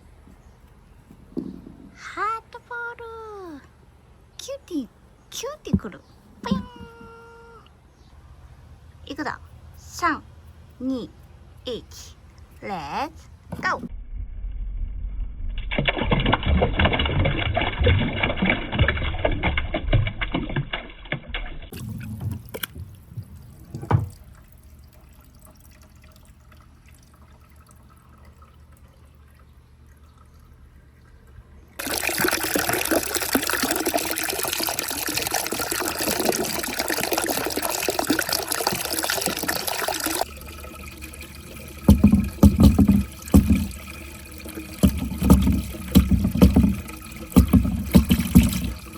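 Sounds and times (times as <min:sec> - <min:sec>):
water trickling down a marble run: 0:09.1 - 0:13.8, 0:15.4 - 0:48.9
low thumps: 0:21.8 - 0:24.5, 0:41.6 - 0:48.9.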